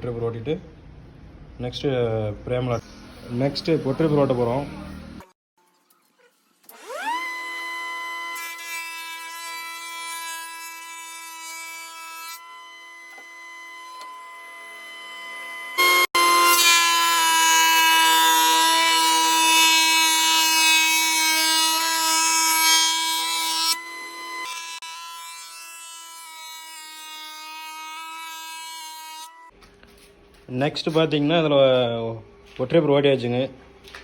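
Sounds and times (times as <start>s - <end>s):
cutter machine whining: 6.7s - 29.5s.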